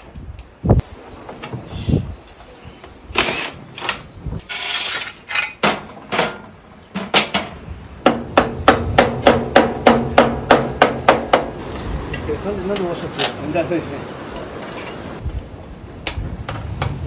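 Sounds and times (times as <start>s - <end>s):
hammer blows ringing: 8.0s - 11.6s.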